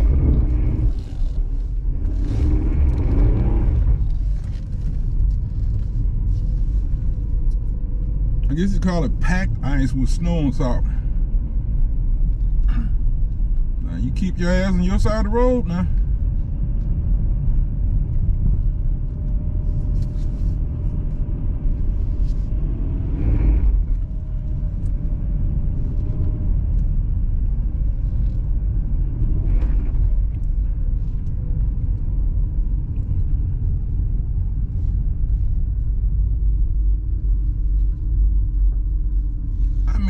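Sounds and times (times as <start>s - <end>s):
car tyres and engine rumble: 0.0s - 40.0s.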